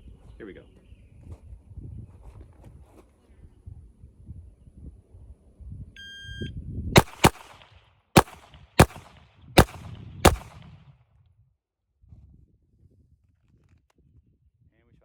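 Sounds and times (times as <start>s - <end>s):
handgun shots: 7.0s - 10.7s.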